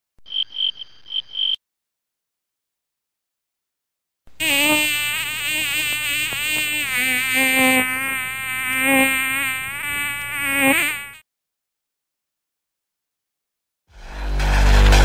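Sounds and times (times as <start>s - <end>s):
flying insect buzzing: 4.4s - 11.2s.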